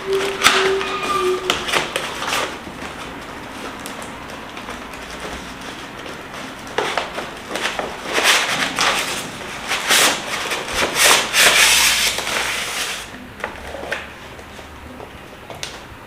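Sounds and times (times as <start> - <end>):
packaging rustling and crinkling: 0.1 - 14.6.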